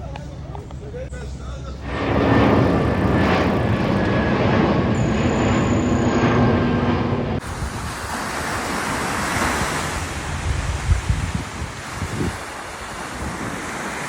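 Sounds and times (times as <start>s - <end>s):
wind buffeting microphone: 1.8s - 14.0s
surf washing on beach: 7.4s - 14.0s.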